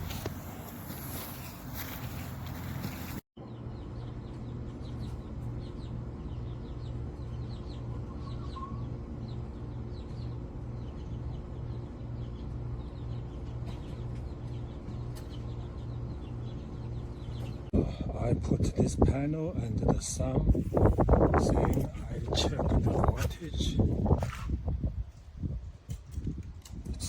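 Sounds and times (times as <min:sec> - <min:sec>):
birds chirping faintly: 0:00.0 - 0:17.7.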